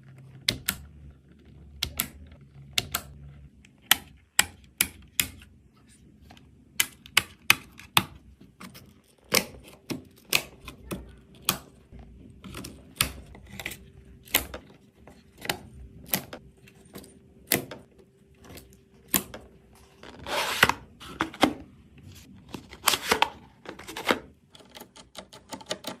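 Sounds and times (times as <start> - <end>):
computer parts clicking and knocking: 0.4 - 5.4, 6.7 - 19.5, 23.6 - 26.0.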